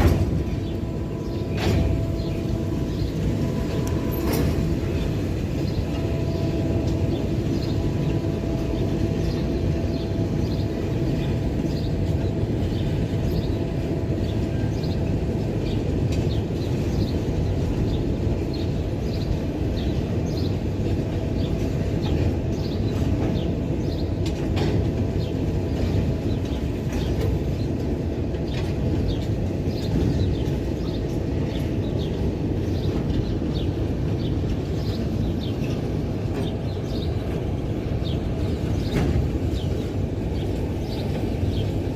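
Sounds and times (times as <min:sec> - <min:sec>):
wheels clicking and squeaking: 0:00.0 - 0:15.1
freight train rumbling: 0:00.0 - 0:41.9.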